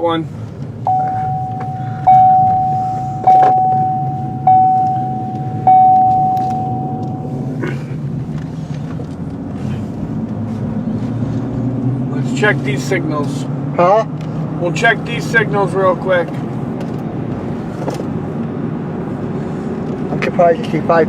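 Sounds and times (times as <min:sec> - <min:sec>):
car engine idling: 0:00.0 - 0:10.7
railroad crossing bell ringing: 0:00.9 - 0:07.6.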